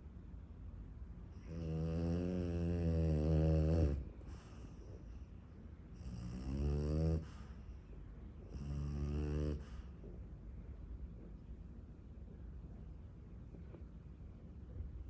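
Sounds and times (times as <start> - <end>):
puppy snoring: 1.4 - 5.3, 6.0 - 7.6, 8.5 - 9.9.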